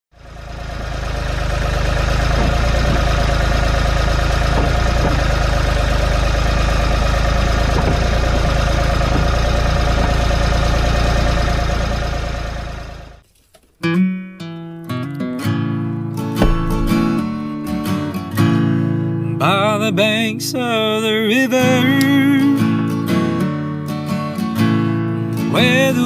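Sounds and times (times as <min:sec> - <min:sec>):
tractor engine running steadily: 0:00.2 - 0:13.2, 0:16.4 - 0:19.1.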